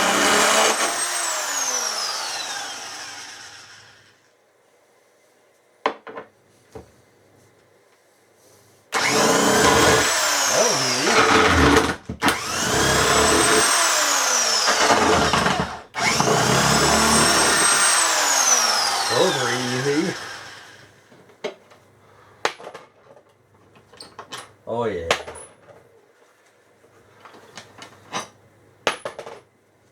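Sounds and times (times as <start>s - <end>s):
electric power tool whining: 0.0s - 4.1s, 9.0s - 21.0s.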